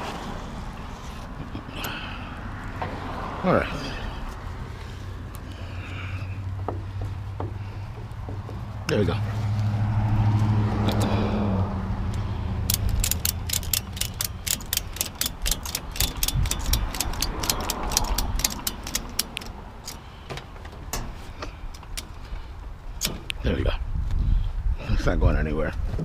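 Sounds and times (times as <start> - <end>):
ratchet strap clicking: 12.1 - 20.1.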